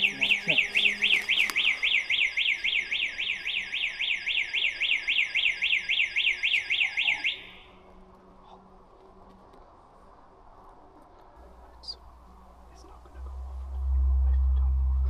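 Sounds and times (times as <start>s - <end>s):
alarm siren sweeping: 0.0s - 7.9s, 13.0s - 15.0s.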